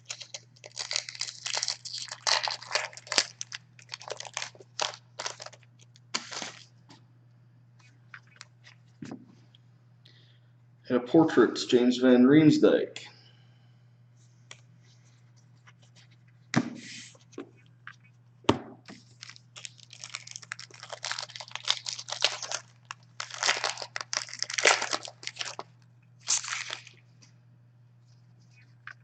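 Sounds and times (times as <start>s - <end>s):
wrapper tearing and crinkling: 0.0s - 6.7s, 19.0s - 27.0s
low steady hum: 0.0s - 29.0s.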